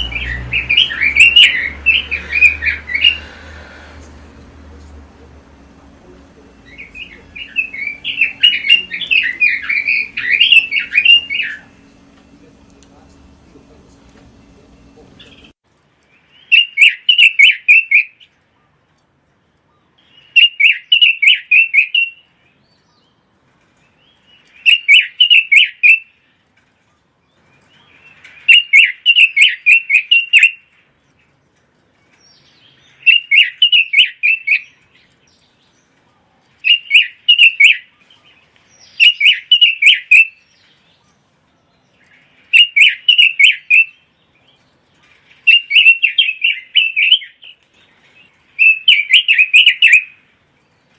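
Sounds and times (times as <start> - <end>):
bird singing warbled phrases: 0.0 - 15.5, 38.7 - 40.7, 42.5 - 44.1, 45.5 - 47.5, 48.6 - 50.2.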